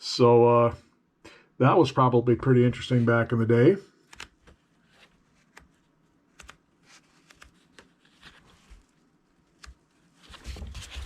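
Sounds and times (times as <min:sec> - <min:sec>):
book pages flicking and rustling: 0:04.0 - 0:11.0.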